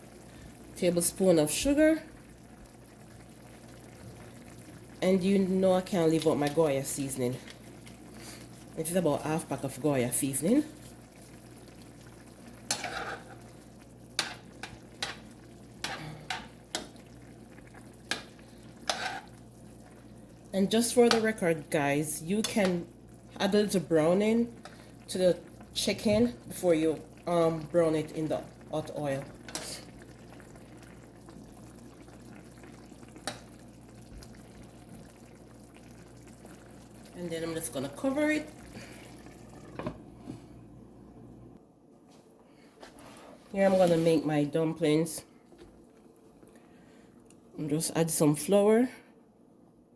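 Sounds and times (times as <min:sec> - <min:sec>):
stew simmering and bubbling: 0:00.0 - 0:49.9
spoon scraping and knocking pot: 0:12.7 - 0:13.4, 0:18.8 - 0:19.3.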